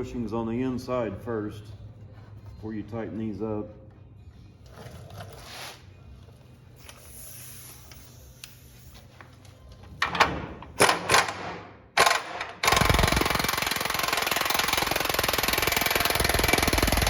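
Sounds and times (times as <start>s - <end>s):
impact wrench hammering rattle: 10.8s - 17.0s.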